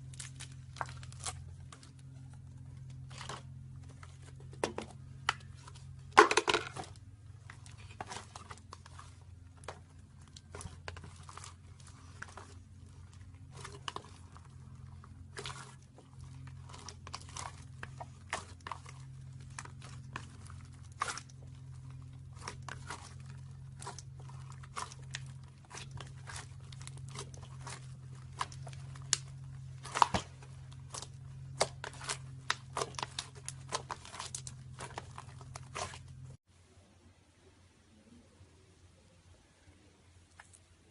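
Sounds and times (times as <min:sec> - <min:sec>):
steady low hum: 0:00.0 - 0:40.9
slime popping and crackling: 0:10.4 - 0:36.3.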